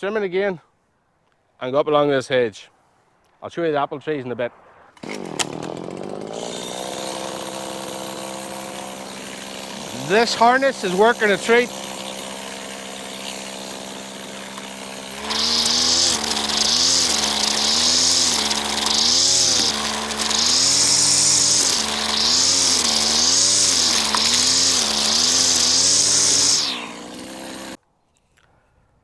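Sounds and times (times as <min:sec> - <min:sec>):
strimmer engine revving: 0:05.0 - 0:27.8.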